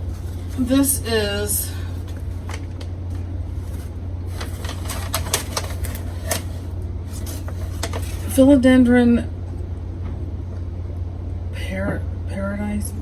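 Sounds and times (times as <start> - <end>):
steady low hum: 0.0 - 13.0
packaging crackling: 1.8 - 8.4.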